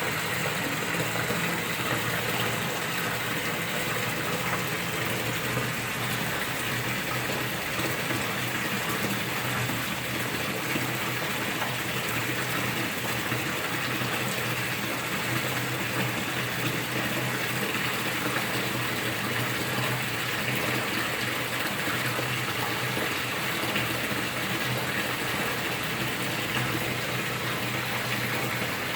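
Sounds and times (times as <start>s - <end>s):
waterfall splashing into pond: 0.0s - 28.9s.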